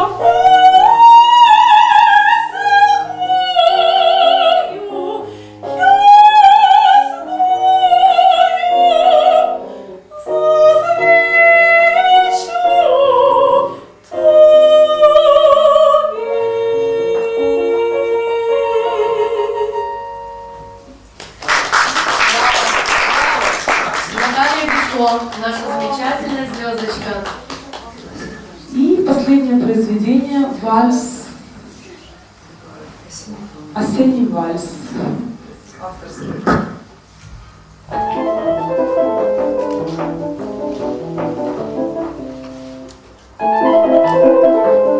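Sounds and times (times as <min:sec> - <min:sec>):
piano accompaniment: 0:00.0 - 0:21.2, 0:37.8 - 0:44.9
audience applause: 0:21.2 - 0:28.1.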